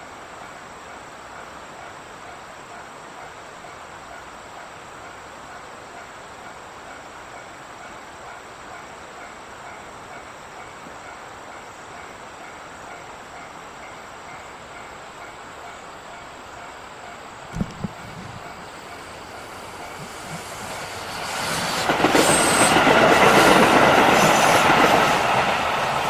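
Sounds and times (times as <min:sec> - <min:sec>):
train rolling past: 0:00.0 - 0:26.0.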